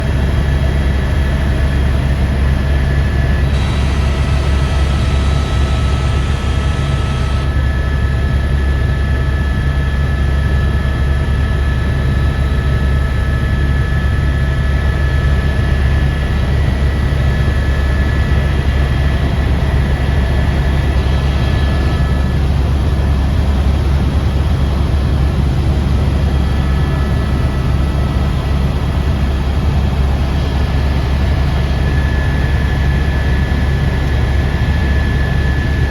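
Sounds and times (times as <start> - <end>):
helicopter engine and rotor: 0.0 - 35.9
thin high whine: 3.3 - 8.3, 16.4 - 22.4.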